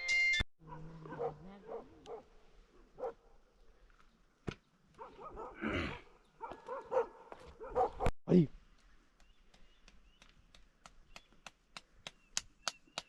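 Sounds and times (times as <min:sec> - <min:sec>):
dog barking: 0:00.6 - 0:03.4, 0:05.0 - 0:05.7, 0:06.4 - 0:08.1.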